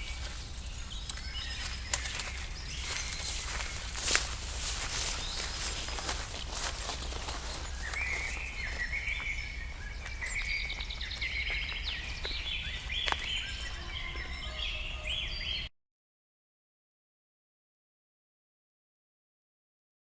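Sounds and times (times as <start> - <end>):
birds chirping: 0.0 - 15.7.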